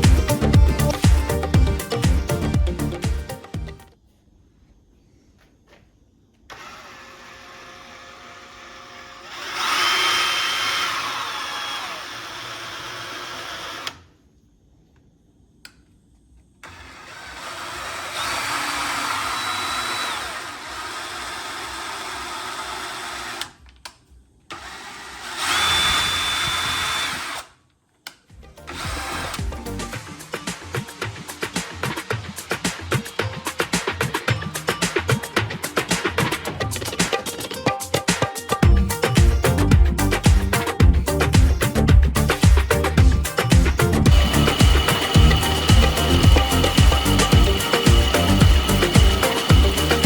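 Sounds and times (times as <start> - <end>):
power tool motor whirring: 6.5 - 14.0, 16.6 - 23.6, 24.5 - 27.5, 28.6 - 32.7, 44.1 - 50.0.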